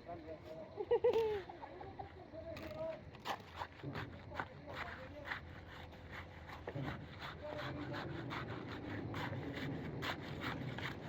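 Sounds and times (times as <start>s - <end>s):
scrapes and light knocks: 2.5s - 11.0s.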